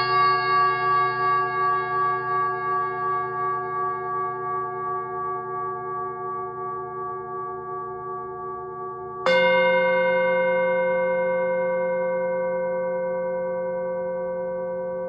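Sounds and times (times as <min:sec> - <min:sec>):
singing bowl ringing: 0:00.0 - 0:15.0.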